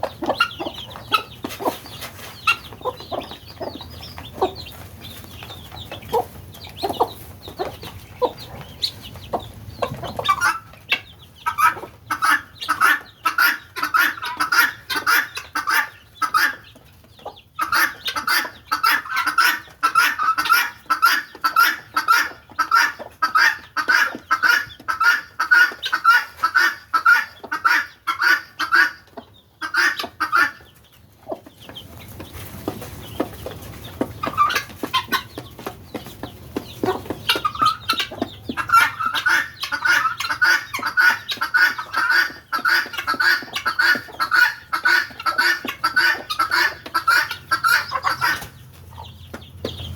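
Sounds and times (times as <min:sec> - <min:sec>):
soft bird clucks: 0:00.0 - 0:49.9
guineafowl harsh repeated calls: 0:11.5 - 0:16.6, 0:17.6 - 0:29.0, 0:29.6 - 0:30.6, 0:37.3 - 0:48.5.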